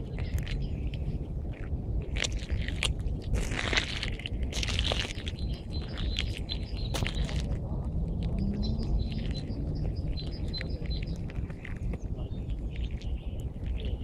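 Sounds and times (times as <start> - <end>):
songbirds chirping: 0.0 - 1.6, 4.9 - 14.0
steady low rumble: 0.0 - 14.0.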